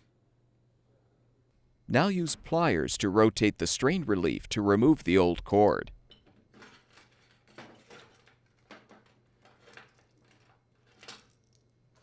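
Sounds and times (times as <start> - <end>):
low steady hum: 0.0 - 6.3.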